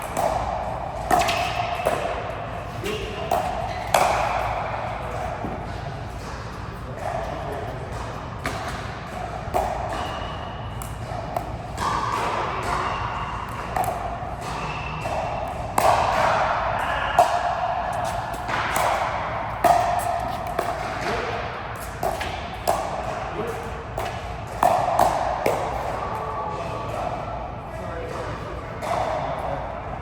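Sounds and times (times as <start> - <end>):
sharp racket ball strikes: 0.0 - 27.2
shoes squeaking on court floor: 17.9 - 21.1.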